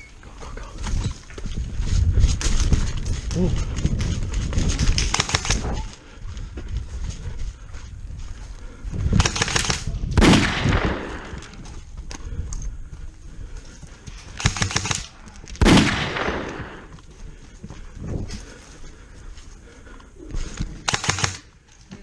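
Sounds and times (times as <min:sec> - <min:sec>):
airsoft gun bursts: 0:10.2 - 0:11.6, 0:15.6 - 0:17.0
loud sharp ringing crack: 0:10.2 - 0:11.6, 0:15.6 - 0:17.0.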